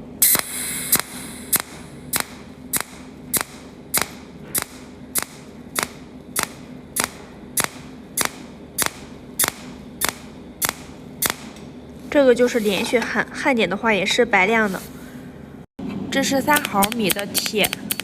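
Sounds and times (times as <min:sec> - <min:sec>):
faint steady hum: 0:00.0 - 0:18.0
welding pulse cracks: 0:00.2 - 0:11.6.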